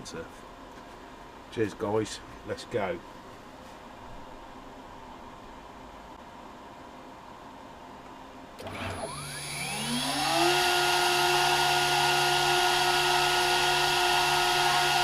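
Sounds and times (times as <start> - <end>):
router spindle whining: 8.6 - 15.0.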